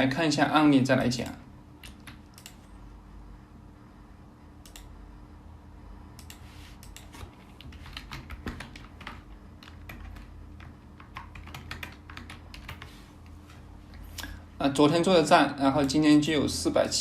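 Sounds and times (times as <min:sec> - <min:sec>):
low steady hum: 0:00.0 - 0:17.0
typing on keyboard: 0:06.2 - 0:12.9.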